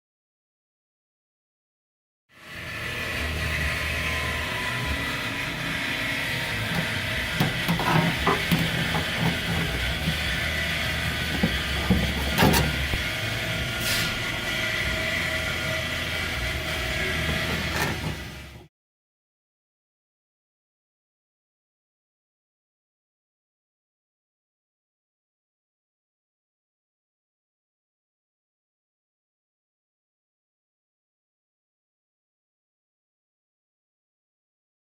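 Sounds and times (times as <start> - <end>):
workshop hum and hiss: 2.4 - 18.7
clicks and knocks of tools: 6.7 - 10.2, 11.3 - 13.0.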